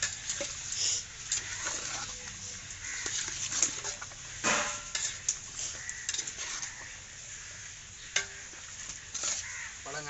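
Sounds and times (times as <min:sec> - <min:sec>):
metal spoon scraping a pot: 0:03.0 - 0:06.8, 0:08.1 - 0:09.5.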